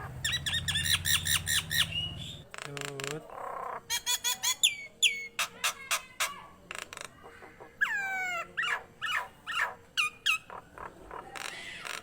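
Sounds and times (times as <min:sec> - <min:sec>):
myna whistling: 0:00.2 - 0:02.4.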